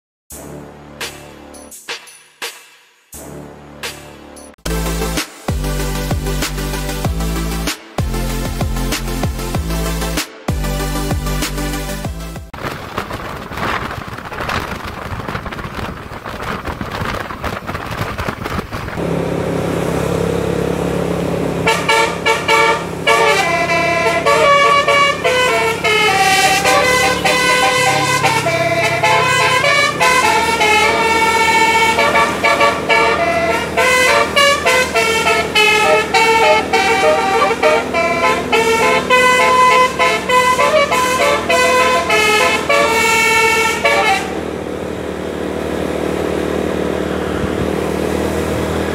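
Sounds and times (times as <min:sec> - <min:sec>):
musical bus air horn: 0:21.5 - 0:44.6.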